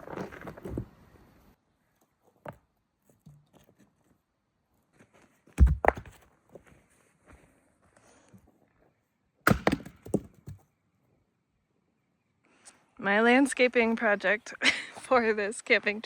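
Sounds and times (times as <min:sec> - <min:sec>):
rocks and dirt crunching: 0:00.0 - 0:01.2
heavy thud of rocks: 0:09.5 - 0:10.6.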